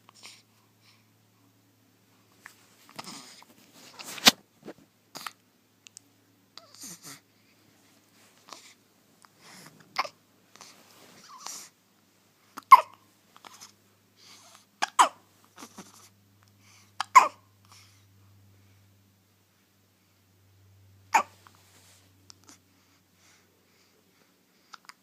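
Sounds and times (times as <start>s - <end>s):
baby hiccup: 10.0s - 10.2s, 12.6s - 13.0s, 14.8s - 15.2s, 17.0s - 17.5s, 21.1s - 21.4s.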